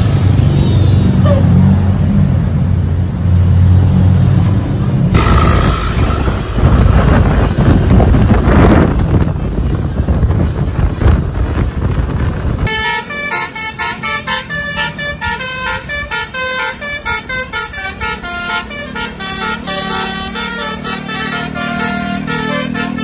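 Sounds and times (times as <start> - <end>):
musical bus horn playing tune: 5.1 - 7.4, 12.6 - 23.0
wind buffeting microphone: 5.1 - 12.8.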